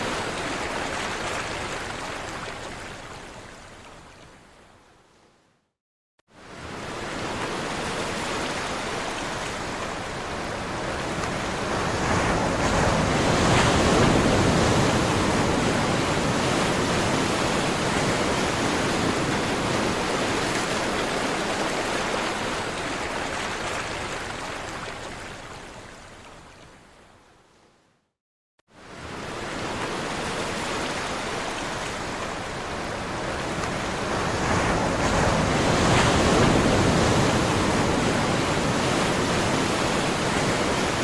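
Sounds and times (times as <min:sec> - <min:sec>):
waves washing on shore: 0:06.4 - 0:26.4, 0:28.7 - 0:41.0.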